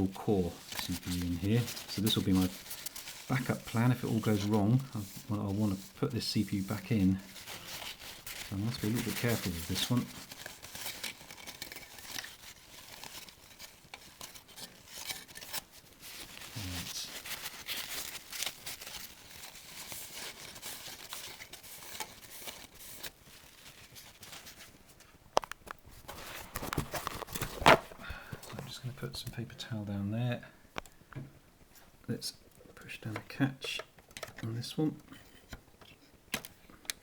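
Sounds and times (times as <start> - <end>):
paper towel rustling: 0.0 - 25.2, 25.9 - 29.3
small handling clicks: 33.8 - 34.5.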